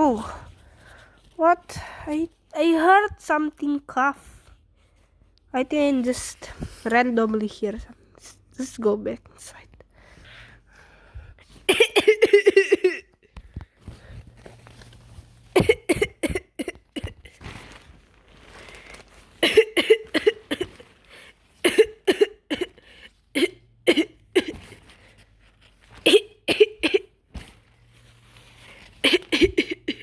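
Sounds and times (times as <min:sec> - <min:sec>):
person coughing: 0:11.7 - 0:13.1, 0:15.6 - 0:17.4, 0:19.4 - 0:20.9, 0:21.6 - 0:24.8, 0:26.0 - 0:27.2, 0:29.0 - 0:30.0.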